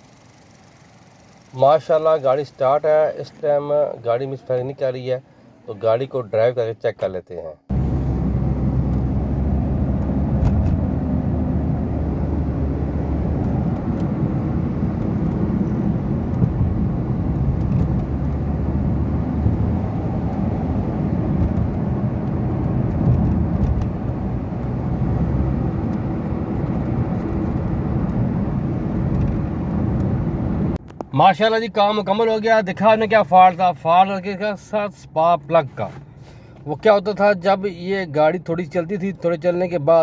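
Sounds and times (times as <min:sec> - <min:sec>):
car engine running: 0:00.0 - 0:02.7, 0:07.7 - 0:31.0
road noise: 0:00.0 - 0:06.6, 0:07.6 - 0:40.0.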